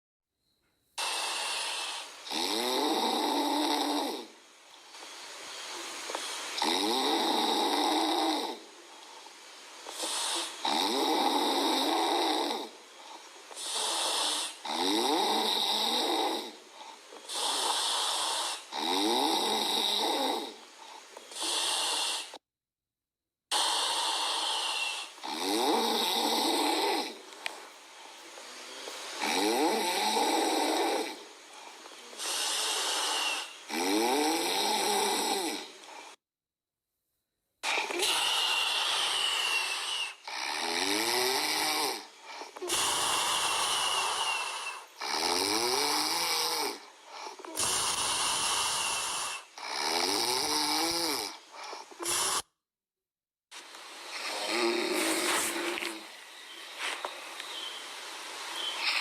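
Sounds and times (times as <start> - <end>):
quiet breathing: 0.4 - 22.4, 23.5 - 36.2, 37.6 - 52.6, 53.6 - 59.0
puppy snoring: 1.0 - 4.4, 6.1 - 8.7, 9.9 - 12.8, 13.5 - 20.6, 21.2 - 22.4, 23.5 - 27.7, 28.7 - 36.2, 37.6 - 52.6, 54.1 - 56.2, 58.6 - 59.0.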